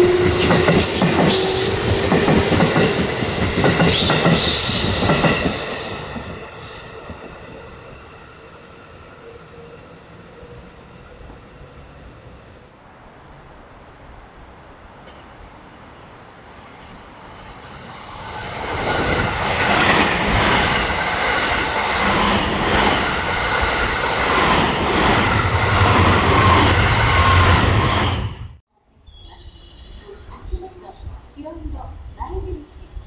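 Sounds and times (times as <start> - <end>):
train wheels clattering on rails: 0.0 - 8.8, 16.8 - 28.4.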